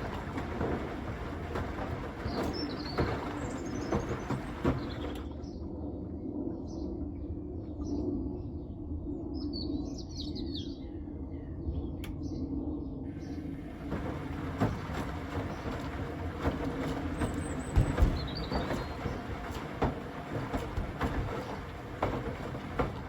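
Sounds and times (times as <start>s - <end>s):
load knocking in washing machine: 0.0s - 5.3s, 13.4s - 23.0s
birds chirping: 0.0s - 5.4s, 13.1s - 23.0s
washing machine drum humming: 0.0s - 5.4s, 13.1s - 23.0s.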